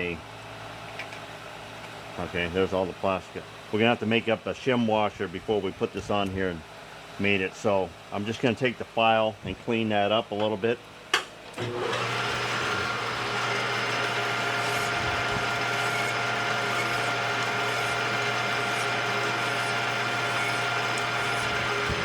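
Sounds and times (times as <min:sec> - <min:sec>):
metal lathe running: 0:11.6 - 0:22.0.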